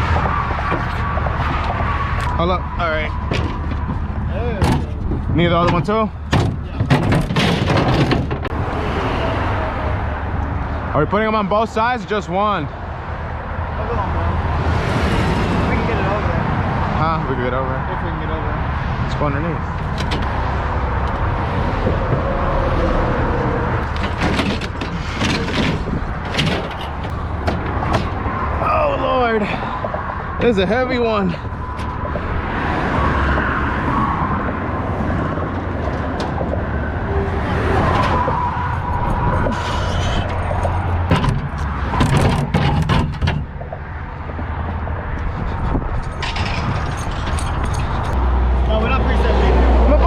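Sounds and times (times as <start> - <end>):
highway traffic rumble: 0.0 - 50.0
heavy equipment clattering: 3.2 - 8.5, 23.8 - 28.3, 40.1 - 44.4, 45.2 - 48.2.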